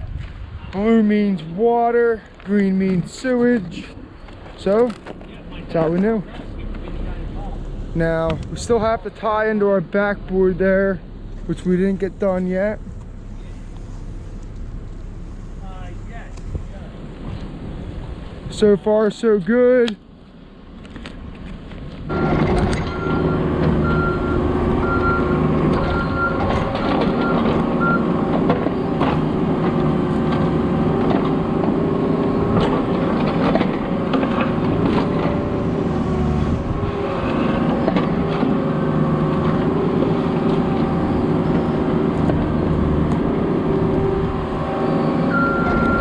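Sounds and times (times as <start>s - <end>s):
diesel engine running: 0.4s - 18.9s, 20.0s - 46.0s
knocks and clanks: 21.0s - 23.8s, 24.8s - 31.8s, 32.4s - 35.6s
backup alarm beeping: 22.1s - 26.5s, 27.1s - 28.1s, 45.3s - 46.0s.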